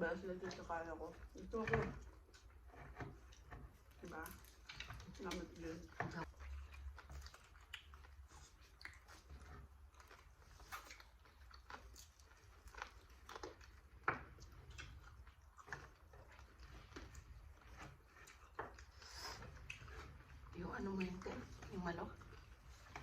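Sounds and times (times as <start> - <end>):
people chewing food: 0.0 - 23.0.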